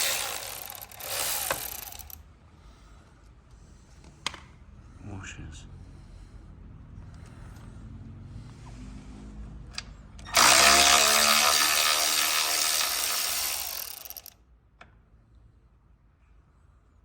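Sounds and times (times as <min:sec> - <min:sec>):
power drill motor whine: 0:00.0 - 0:02.2, 0:10.3 - 0:14.3.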